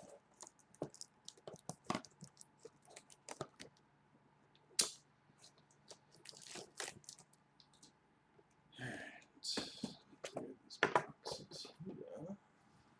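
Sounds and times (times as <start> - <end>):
plastic wrap crinkling: 0.0 - 3.8, 5.9 - 7.4
sharp snap: 4.8 - 5.0.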